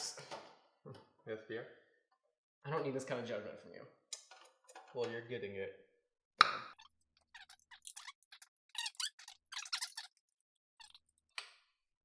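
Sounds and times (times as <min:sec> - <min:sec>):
screwdriver clicking and scraping: 0:06.8 - 0:10.2.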